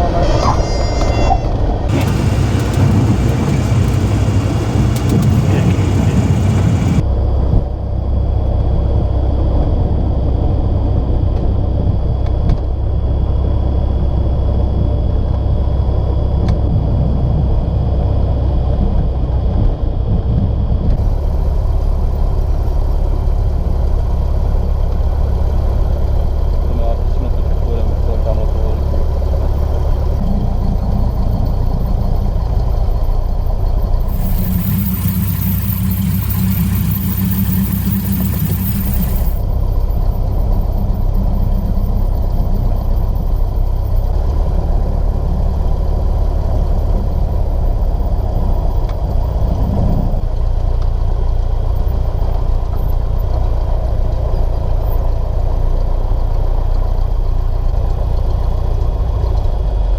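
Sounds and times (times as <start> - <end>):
airplane engine running: 1.4 - 7.0, 34.0 - 39.4.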